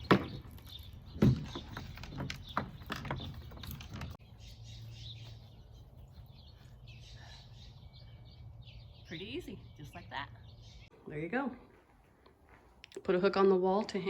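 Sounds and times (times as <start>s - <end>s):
birds chirping faintly: 0.0s - 12.4s.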